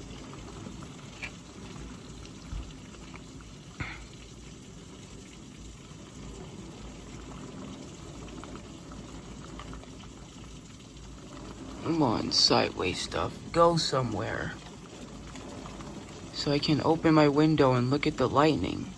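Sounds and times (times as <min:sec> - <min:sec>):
heavy rain behind window: 0:00.0 - 0:18.9.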